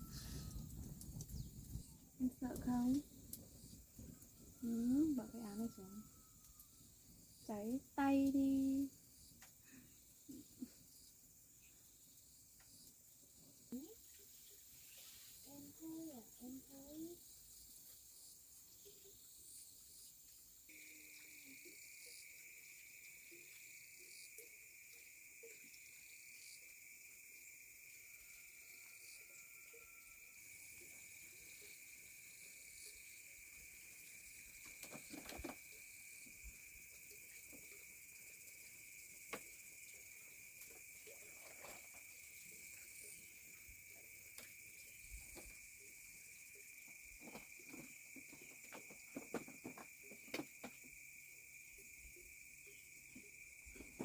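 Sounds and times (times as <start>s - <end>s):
high-pitched insect drone: 13.7s - 54.0s.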